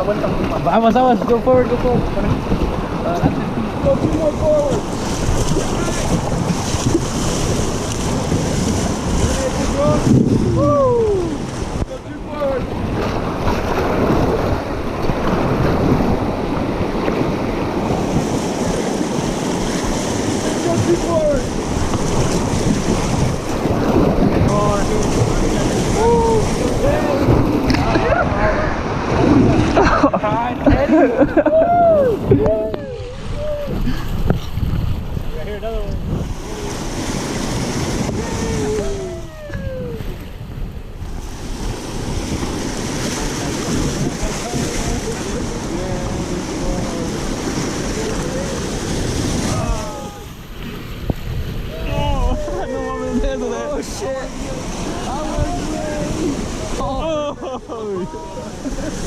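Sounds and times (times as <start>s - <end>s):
whitewater river churning: 0.0s - 59.0s
wind buffeting microphone: 0.0s - 59.0s
voices calling out: 38.0s - 40.3s, 51.7s - 59.0s.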